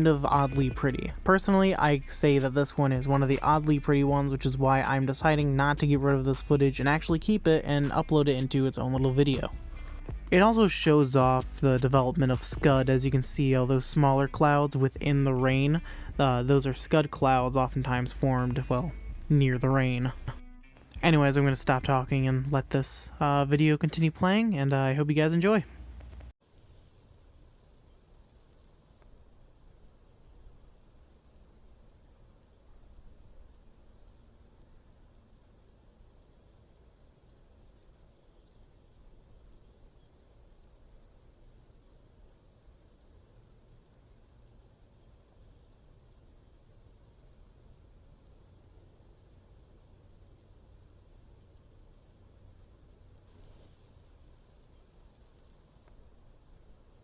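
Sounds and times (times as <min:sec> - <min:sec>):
low background hiss: 0:00.0 - 0:57.0
crickets trilling: 0:26.4 - 0:57.0.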